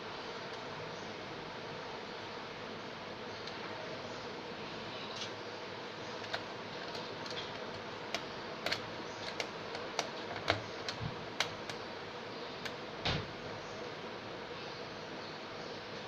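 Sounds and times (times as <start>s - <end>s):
computer hardware clicks and taps: 6.2s - 11.8s.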